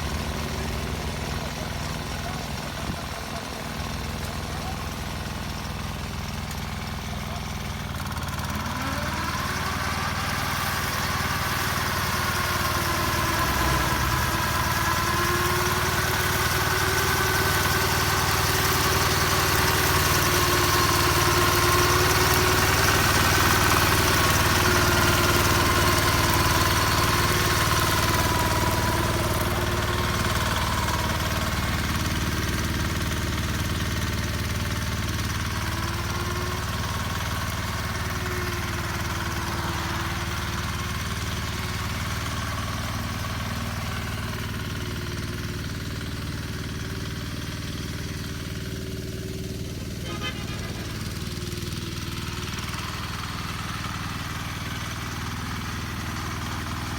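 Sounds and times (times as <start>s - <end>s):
mower diesel engine running: 0.0s - 56.9s.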